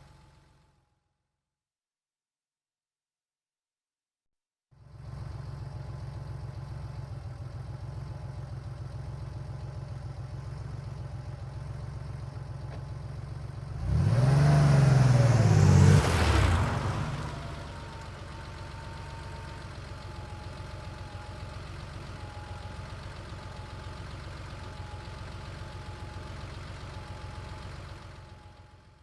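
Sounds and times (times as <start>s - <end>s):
car engine idling: 4.8s - 14.0s, 14.7s - 29.0s
car engine revving: 13.7s - 21.6s.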